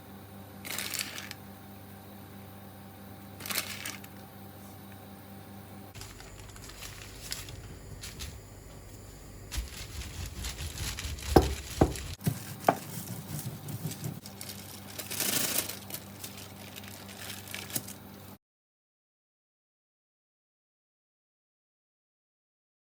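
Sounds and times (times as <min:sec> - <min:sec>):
rustling and crinkling handling: 0:06.0 - 0:18.0
sharp knocks: 0:11.2 - 0:12.8.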